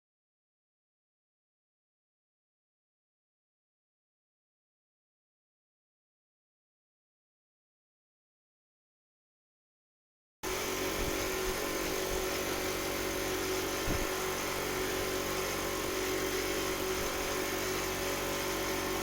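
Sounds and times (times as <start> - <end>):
small motor humming: 10.4 - 19.0.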